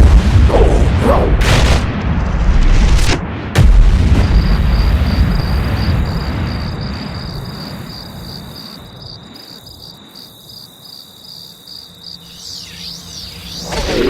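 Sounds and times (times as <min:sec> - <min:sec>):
low explosion rumble: 0:00.0 - 0:08.8
crickets chirping: 0:04.2 - 0:14.0
wavering whoosh: 0:13.6 - 0:14.0.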